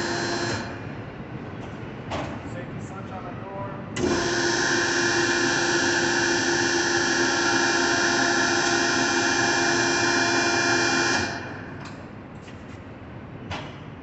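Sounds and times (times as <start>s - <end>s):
hydraulic pump whining: 0.0s - 1.2s, 3.9s - 12.1s.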